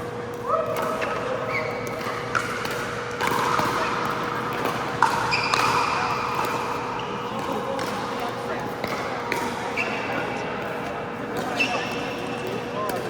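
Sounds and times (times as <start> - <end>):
shoes squeaking on floor: 0.9 - 2.3, 5.2 - 7.7, 9.6 - 12.9.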